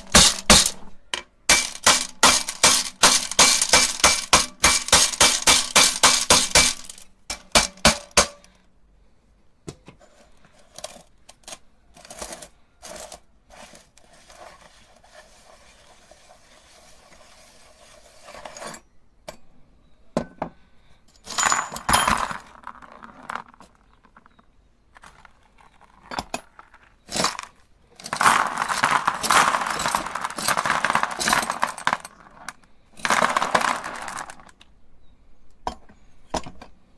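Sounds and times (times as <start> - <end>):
marbles rattling in metal grinder: 0.0 - 8.5, 10.8 - 18.7, 26.6 - 34.5.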